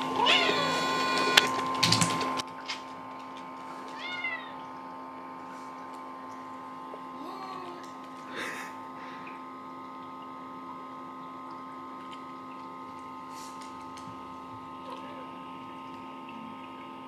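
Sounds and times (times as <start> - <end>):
steady hum of held tones: 0.0 - 2.4.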